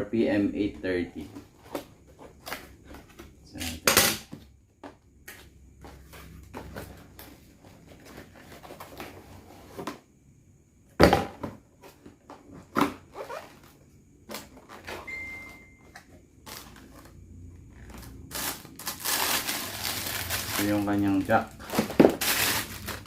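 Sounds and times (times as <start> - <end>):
steady high tone: 15.1 - 16.0
packaging clicks and rustles: 15.9 - 23.0.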